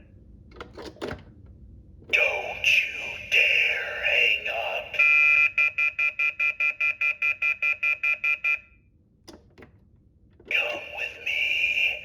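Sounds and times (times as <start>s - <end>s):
recorded voice message: 2.1s - 6.3s, 10.5s - 12.0s
telephone off-hook warning tone: 4.9s - 8.8s.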